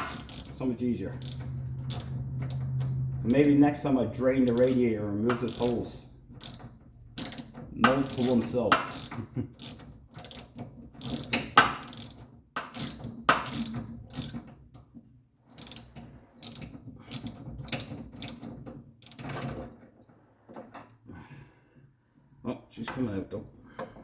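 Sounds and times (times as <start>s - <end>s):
ratchet wrench clicking: 0.0s - 0.6s, 1.2s - 3.6s, 4.4s - 14.5s, 15.6s - 18.4s, 19.0s - 19.4s.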